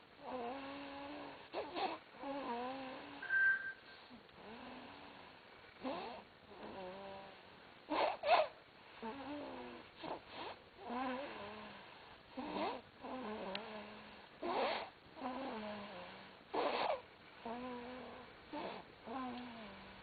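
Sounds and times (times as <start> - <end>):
person snoring with whistly tone: 0.3 - 4.9, 14.4 - 19.8.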